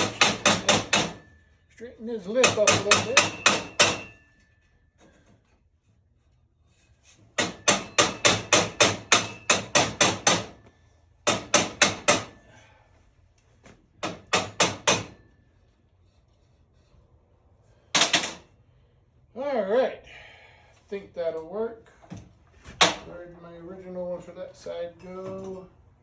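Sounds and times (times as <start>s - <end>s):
hammer tapping on sheet metal: 0.0s - 1.4s, 2.3s - 4.4s, 7.4s - 10.6s, 11.2s - 12.4s, 14.0s - 15.4s.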